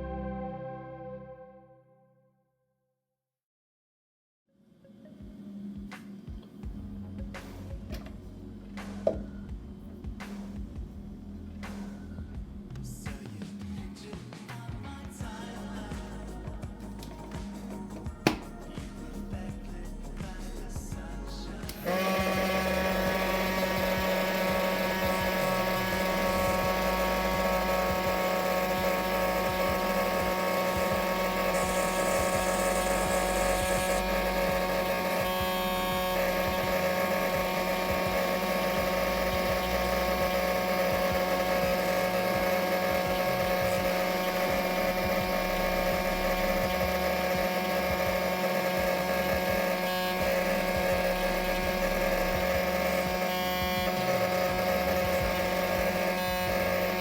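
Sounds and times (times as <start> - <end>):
small electric motor humming: 21.5 - 57.0.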